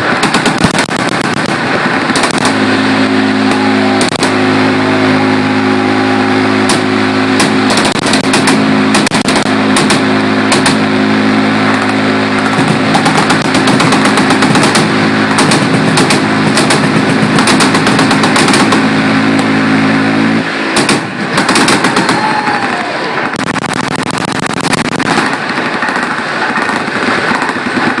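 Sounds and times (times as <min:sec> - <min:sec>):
machine-gun fire crackle: 0:00.0 - 0:02.8, 0:04.0 - 0:04.4, 0:06.7 - 0:11.0, 0:11.7 - 0:19.0, 0:20.7 - 0:22.4, 0:23.2 - 0:28.0
fast-firing gun buzz: 0:00.0 - 0:22.4, 0:23.2 - 0:28.0.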